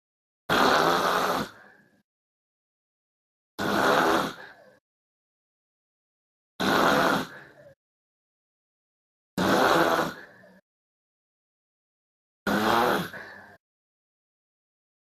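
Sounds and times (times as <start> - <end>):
man snoring loudly: 0.5 - 1.6, 3.6 - 4.6, 6.6 - 7.6, 9.4 - 10.3, 12.5 - 13.5.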